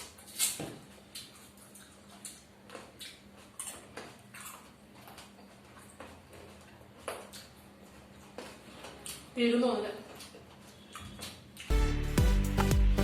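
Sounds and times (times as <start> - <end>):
crisp chewing crunches: 0.0 - 9.3.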